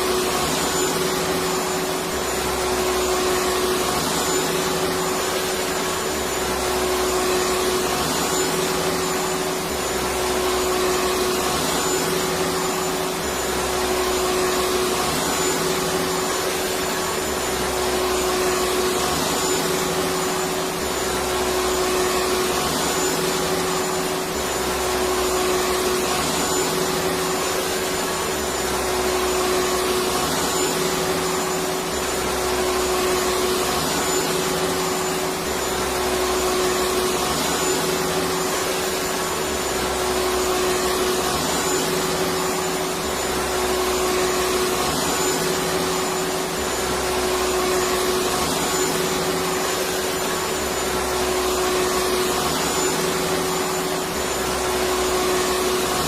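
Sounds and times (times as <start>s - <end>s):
vacuum cleaner running: 0.0s - 56.0s.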